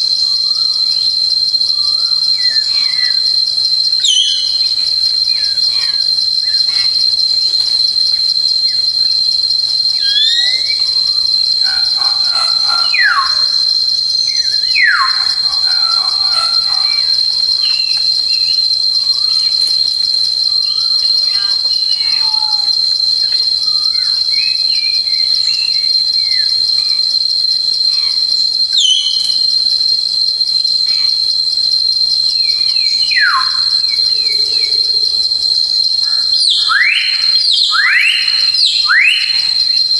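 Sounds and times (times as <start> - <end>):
insect chorus: 0.0 - 39.9
bird chirps: 4.0 - 4.7, 10.0 - 11.0, 28.8 - 29.4
bird whistling: 4.0 - 4.7, 10.0 - 10.9, 28.8 - 29.4, 36.5 - 39.6.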